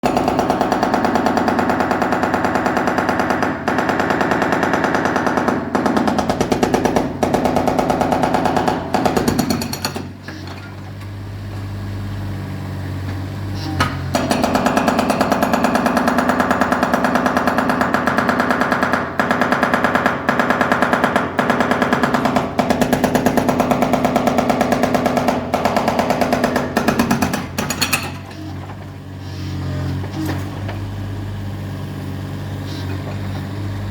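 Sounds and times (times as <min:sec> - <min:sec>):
jackhammer pounding: 0:00.0 - 0:10.2, 0:13.9 - 0:28.8.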